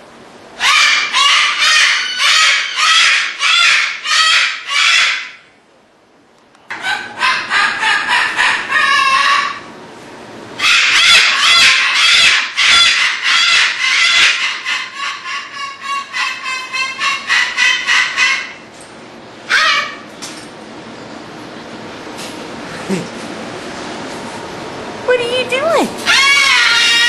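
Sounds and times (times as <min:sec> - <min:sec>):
cockatoos screaming: 0:26.0 - 0:27.0.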